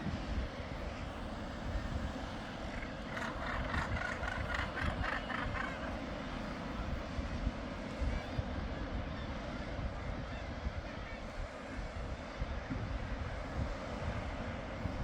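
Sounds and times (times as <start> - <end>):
seabird high calls: 2.3 - 6.8.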